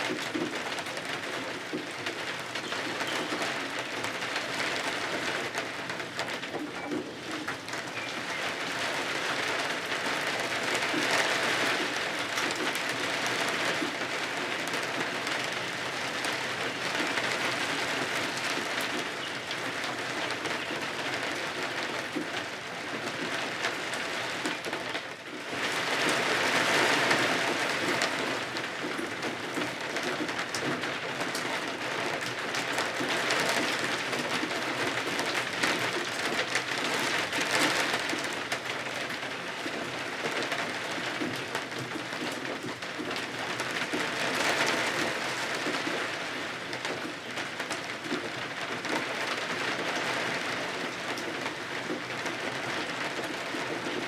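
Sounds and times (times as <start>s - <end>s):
rain falling: 0.0s - 54.0s.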